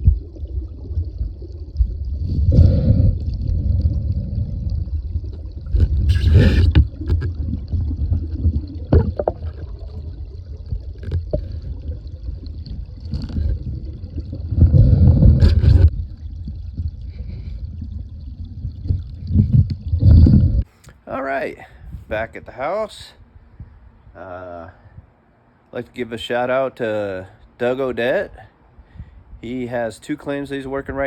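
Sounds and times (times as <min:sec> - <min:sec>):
creek water splashing: 0:00.0 - 0:19.6
steady low rumble: 0:00.0 - 0:20.7.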